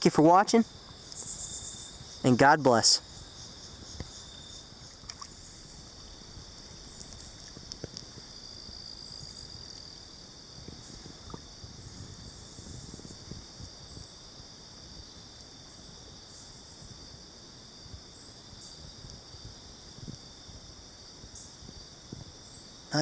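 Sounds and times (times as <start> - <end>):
crickets chirping: 0.0 - 23.0
low rumble of water: 3.2 - 16.3.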